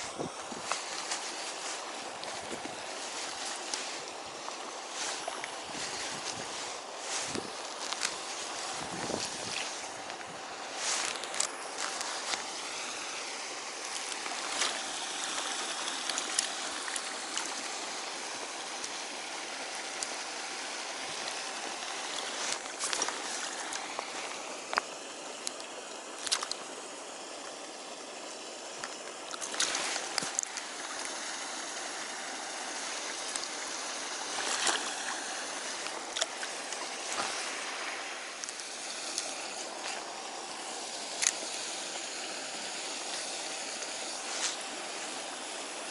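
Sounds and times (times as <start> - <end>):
running water rushing: 0.0 - 45.9.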